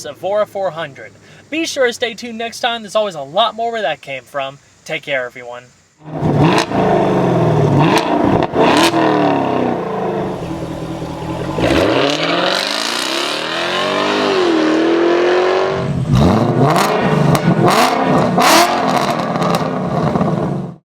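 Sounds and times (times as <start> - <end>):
car engine revving and accelerating: 6.0 - 20.8.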